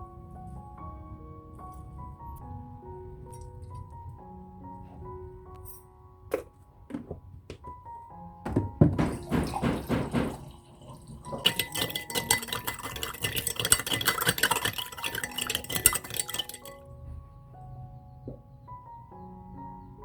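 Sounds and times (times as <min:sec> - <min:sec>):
soft background music: 0:00.0 - 0:20.0
dull knocks: 0:08.4 - 0:10.6
dishes clinking: 0:08.5 - 0:16.8.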